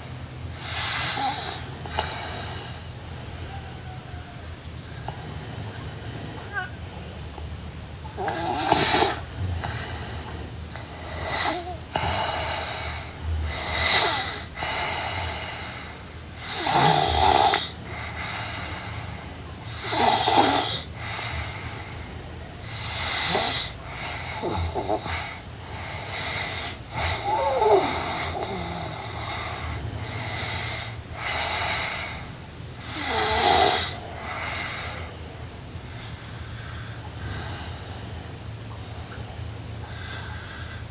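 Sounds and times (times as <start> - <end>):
girl snoring wheezily: 8.1 - 10.3, 11.0 - 15.8, 16.4 - 18.2, 19.7 - 21.6, 22.6 - 35.1.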